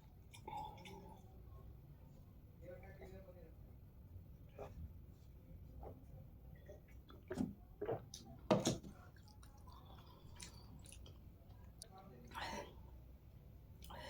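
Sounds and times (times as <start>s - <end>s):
mouth chewing noodles: 6.6s - 8.4s, 9.0s - 12.4s.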